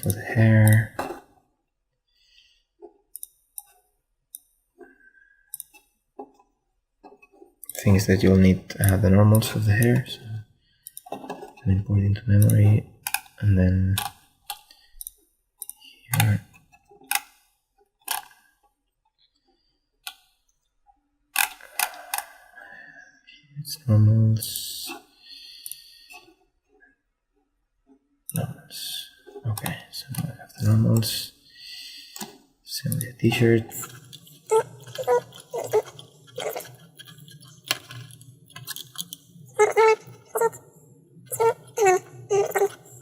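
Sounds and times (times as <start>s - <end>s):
computer mouse clicking: 5.5s - 5.9s, 12.4s - 13.3s, 14.0s - 16.4s
computer mouse clicks: 5.5s - 5.9s, 12.4s - 13.3s.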